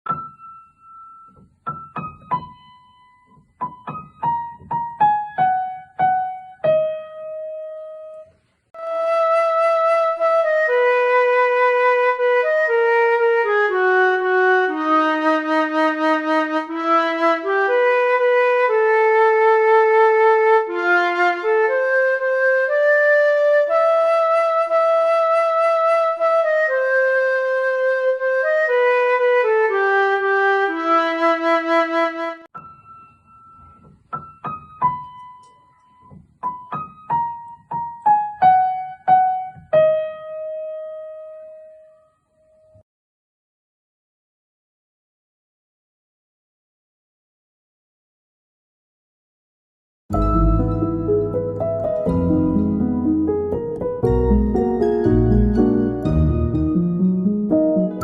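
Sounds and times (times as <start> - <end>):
piano notes: 0.1 - 26.6, 32.2 - 42.8, 50.1 - 58.0
flute-like melody: 7.8 - 32.7, 50.1 - 58.0.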